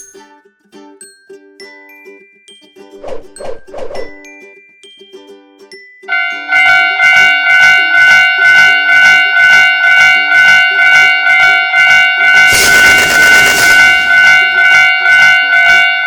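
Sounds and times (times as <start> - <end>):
steady horn-like tone: 12.4 - 15.1
burst of hissing noise: 12.5 - 14.5.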